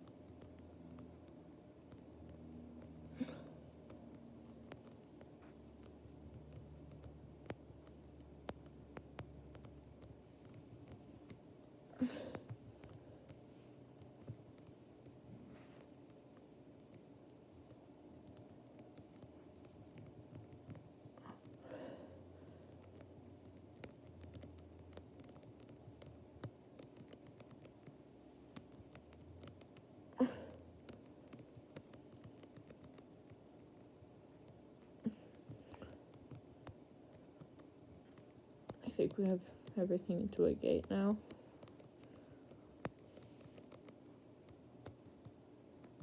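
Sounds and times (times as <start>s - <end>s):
padlock dials clicking: 41.6s - 46.0s.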